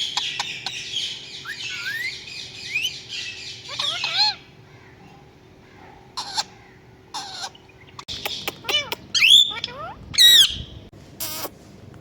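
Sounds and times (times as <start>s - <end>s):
parrot shrill calls: 0.0s - 4.5s, 6.2s - 6.5s, 7.1s - 7.6s, 8.4s - 11.5s
parrot squawking: 0.0s - 4.5s, 6.2s - 11.5s.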